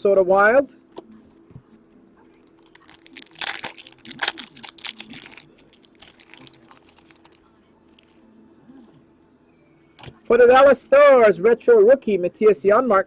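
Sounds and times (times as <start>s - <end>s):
foil wrappers crinkling and tearing: 2.4s - 8.1s.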